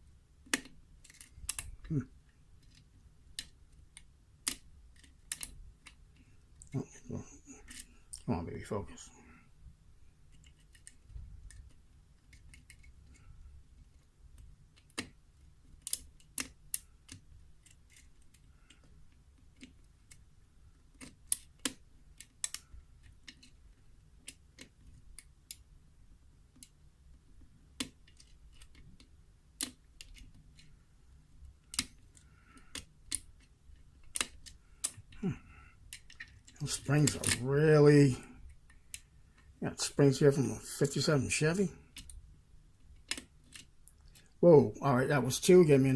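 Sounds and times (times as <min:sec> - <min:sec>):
lock pick metal clicks: 0:34.0 - 0:35.0.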